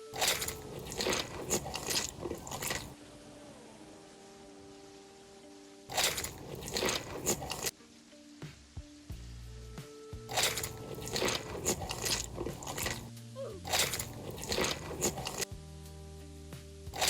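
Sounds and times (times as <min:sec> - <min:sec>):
crunching and chewing crisp food: 0:00.0 - 0:03.0, 0:05.9 - 0:07.7, 0:10.3 - 0:15.5
background music: 0:00.0 - 0:17.0.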